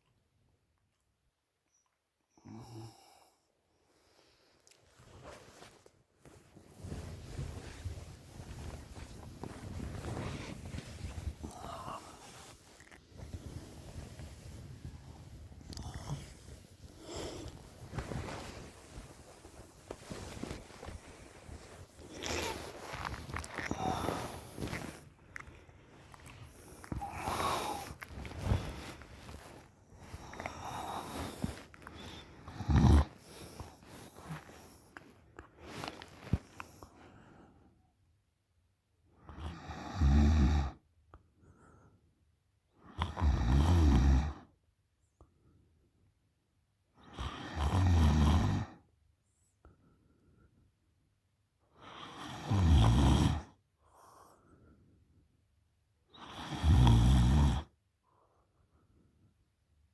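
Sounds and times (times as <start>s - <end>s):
faint breath: 6.8s - 37.9s
girl snoring: 8.4s - 25.1s, 26.5s - 34.5s, 56.2s - 57.6s
girl snoring loudly: 11.3s - 12.4s, 22.1s - 24.9s, 27.0s - 28.7s, 32.5s - 33.2s, 56.2s - 57.6s.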